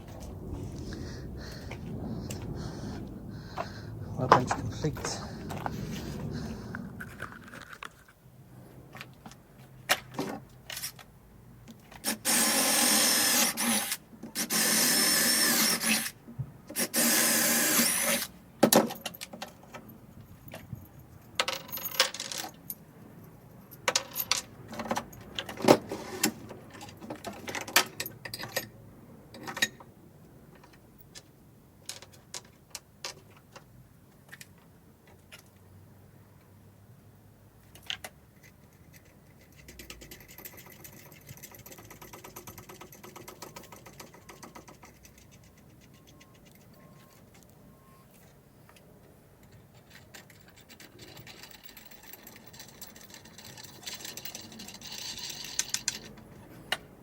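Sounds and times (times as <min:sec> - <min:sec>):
electric drill running: 0:12.2 - 0:16.1, 0:16.8 - 0:18.3.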